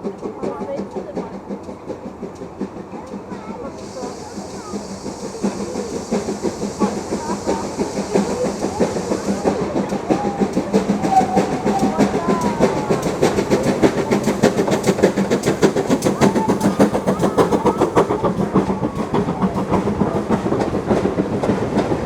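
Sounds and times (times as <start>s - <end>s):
train wheels clattering over joints: 0.0s - 22.0s
wheel squeals: 3.8s - 19.8s.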